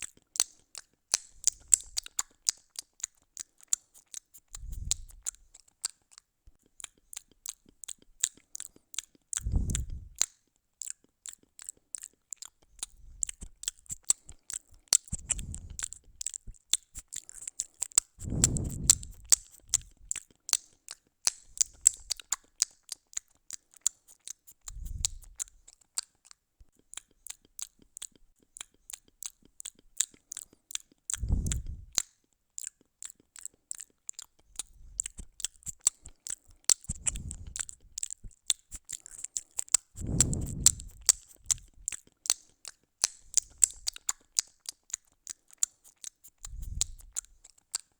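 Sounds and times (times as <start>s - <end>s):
cat crunching food: 0.0s - 47.9s
dull low thump: 18.2s - 19.3s, 31.2s - 31.8s, 40.0s - 41.1s.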